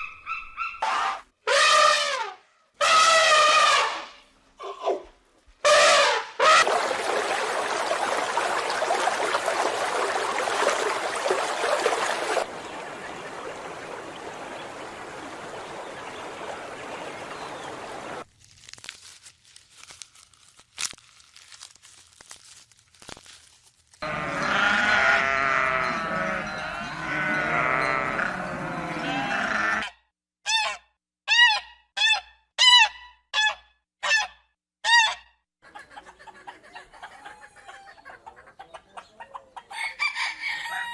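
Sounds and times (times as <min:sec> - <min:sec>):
rustling: 0:18.2 - 0:24.0
farm animals calling: 0:24.0 - 0:30.0.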